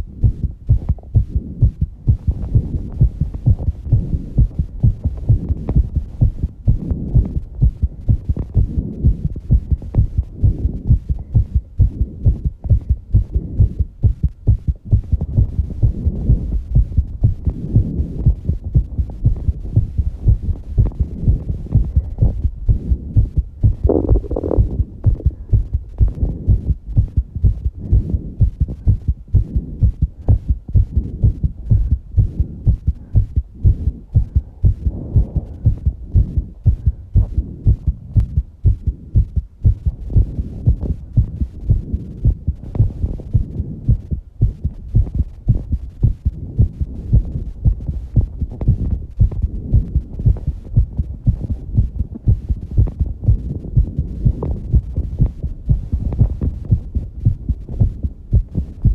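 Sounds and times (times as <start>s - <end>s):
fast heartbeat thumps: 0.0s - 58.9s
heavy breathing: 27.7s - 37.7s.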